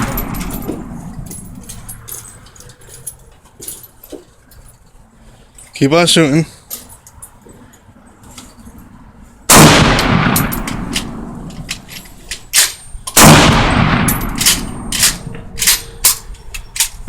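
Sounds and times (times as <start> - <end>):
loud echoing gunshots: 0.0 - 1.1, 9.5 - 11.5, 13.2 - 15.3
faint gunfire cracks: 9.5 - 10.9, 13.2 - 14.4.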